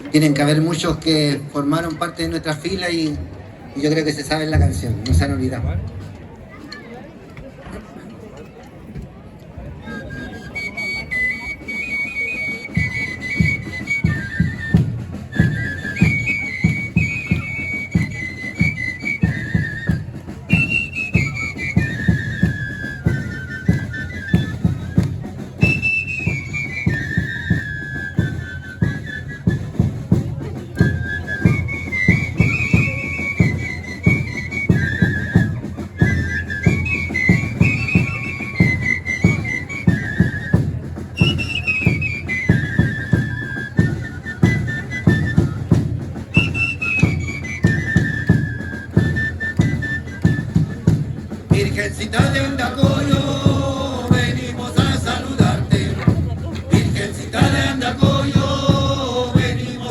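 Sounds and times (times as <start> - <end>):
fast steady drumbeat: 4.4 - 6.2, 44.4 - 59.9
high flute melody: 9.6 - 56.0, 56.6 - 59.9.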